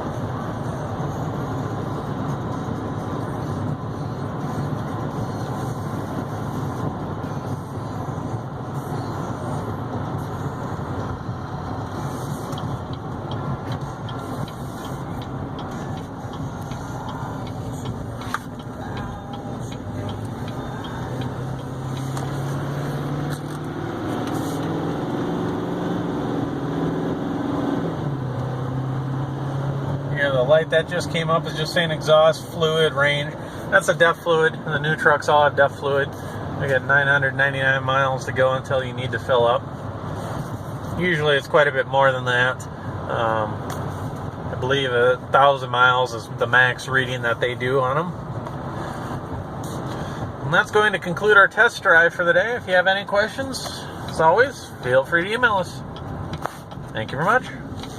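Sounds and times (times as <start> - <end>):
diesel engine running: 0.0 - 37.0
road noise inside cab: 0.0 - 57.9.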